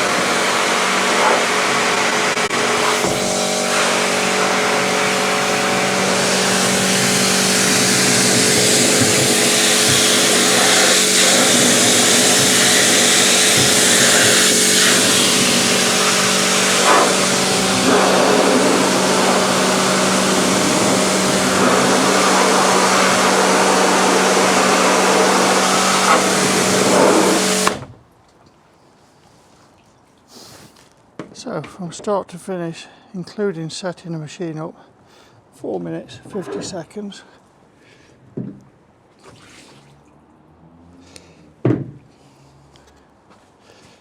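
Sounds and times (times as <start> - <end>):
pressure washer motor hum: 0.0 - 27.9
water jet hissing on plastic: 0.0 - 27.9.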